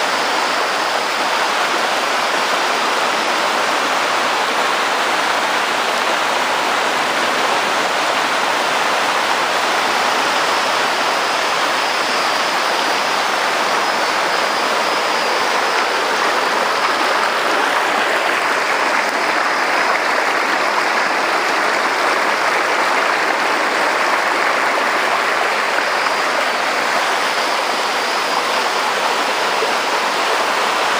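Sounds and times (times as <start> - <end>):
rushing water: 0.0 - 30.9.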